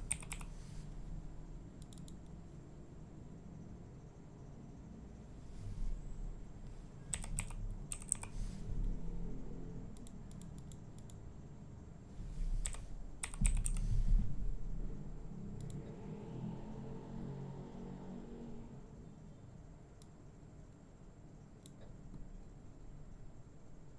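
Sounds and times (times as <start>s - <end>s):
keyboard keys clicking: 0.0s - 0.6s, 1.8s - 2.3s, 7.1s - 8.4s, 12.6s - 14.0s.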